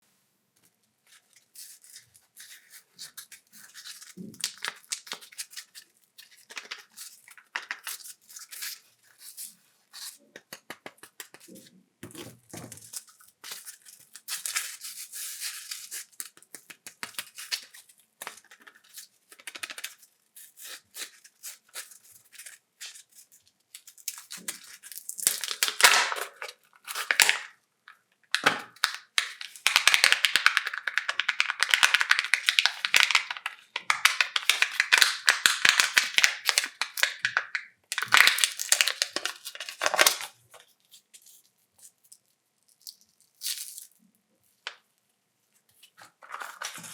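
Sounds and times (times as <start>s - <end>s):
wrappers tearing and crinkling: 23.8s - 27.5s, 28.3s - 44.0s.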